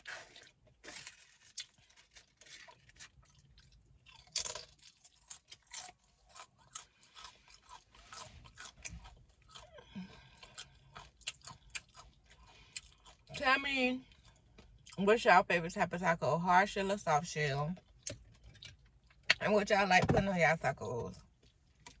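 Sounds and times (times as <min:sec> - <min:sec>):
tortilla chips crunching: 0:00.0 - 0:13.4.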